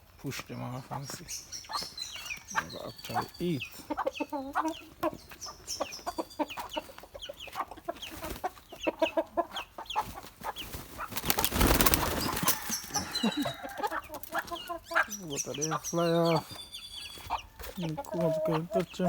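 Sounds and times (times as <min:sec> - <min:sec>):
chickens clucking and peeping: 0:00.0 - 0:19.0
wing flapping: 0:10.6 - 0:13.0.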